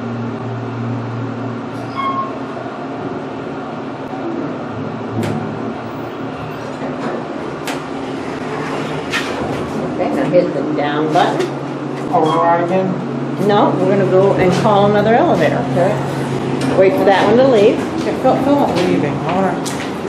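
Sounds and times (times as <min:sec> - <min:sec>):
elevator machinery humming: 0:00.0 - 0:20.0
short beep: 0:01.9 - 0:02.4.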